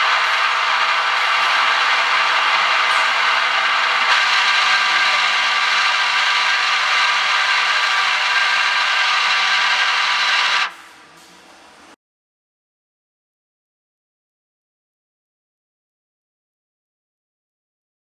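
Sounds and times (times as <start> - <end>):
screw machine whirring: 0.0 - 10.9.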